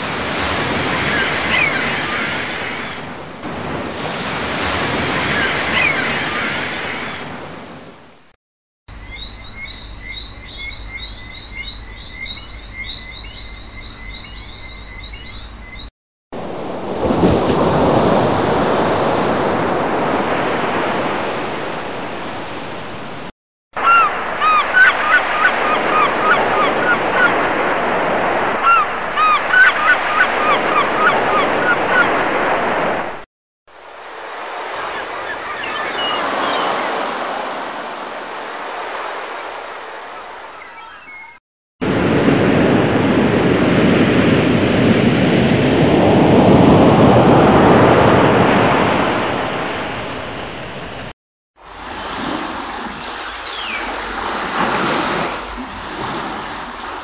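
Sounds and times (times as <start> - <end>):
high chirping: 8.9 - 15.9
short chirping calls: 8.9 - 15.9, 40.5 - 41.4, 53.1 - 53.8.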